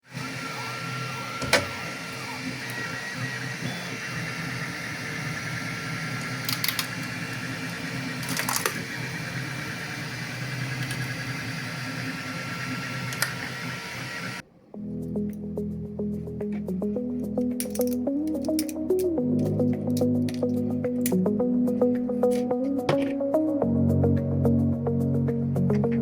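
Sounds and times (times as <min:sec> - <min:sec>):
printer motor whine: 0:00.0 - 0:14.4.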